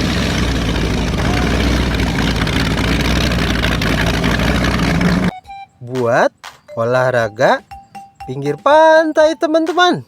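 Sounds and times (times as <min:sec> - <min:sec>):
speedboat engine running: 0:00.0 - 0:05.3.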